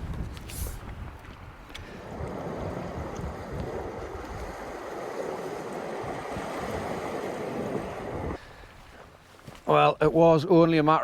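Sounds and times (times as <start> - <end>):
wind rumbling on microphone: 0.0 - 8.5
sea water washing over rocks: 2.0 - 8.4.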